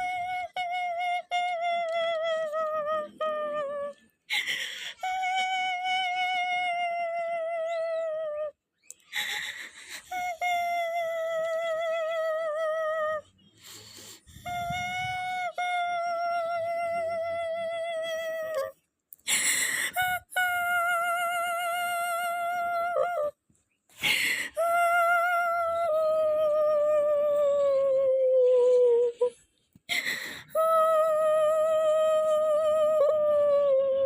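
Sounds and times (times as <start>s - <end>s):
sharp breath: 13.5s - 14.4s.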